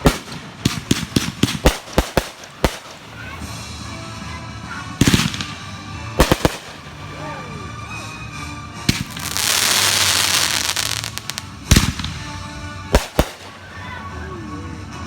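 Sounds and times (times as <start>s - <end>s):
firework bangs: 0.0s - 3.8s, 5.0s - 7.2s, 8.9s - 13.9s
firework crackling: 0.0s - 4.1s, 5.0s - 7.7s, 8.9s - 14.2s.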